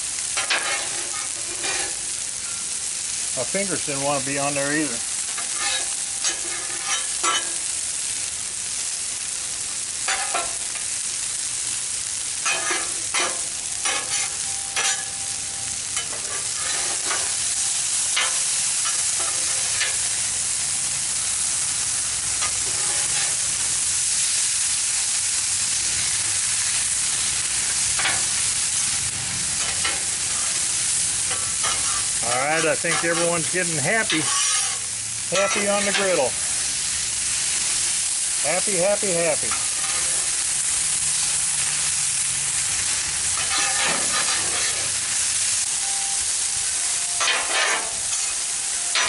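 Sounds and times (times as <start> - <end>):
food sizzling on a griddle: 0.0 - 49.0
utensils scraping on steel: 0.4 - 2.6, 4.5 - 7.7, 12.4 - 17.5, 18.1 - 20.0, 22.4 - 23.4, 29.6 - 36.4, 39.3 - 40.4, 43.3 - 45.0, 47.1 - 49.0.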